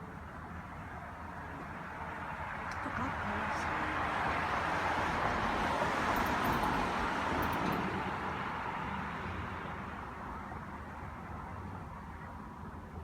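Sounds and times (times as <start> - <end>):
vehicle passing: 1.6 - 11.8.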